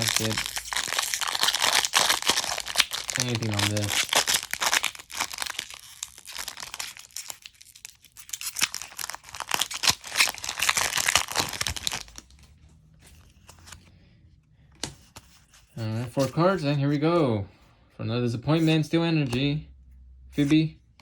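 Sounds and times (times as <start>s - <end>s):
foil wrapper tearing and crinkling: 0.0s - 12.4s.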